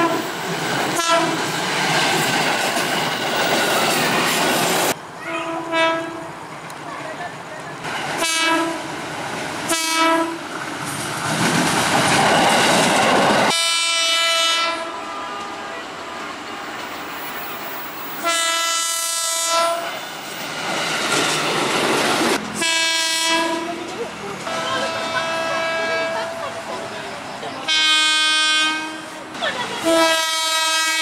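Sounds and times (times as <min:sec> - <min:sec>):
train rushing past: 0:00.0 - 0:31.0
electric train horn blasts: 0:01.0 - 0:01.4, 0:05.4 - 0:06.2, 0:08.2 - 0:08.8, 0:09.7 - 0:10.4, 0:13.5 - 0:15.9, 0:18.2 - 0:20.0, 0:22.6 - 0:23.8, 0:24.4 - 0:26.4, 0:27.7 - 0:29.2, 0:29.8 - 0:31.0.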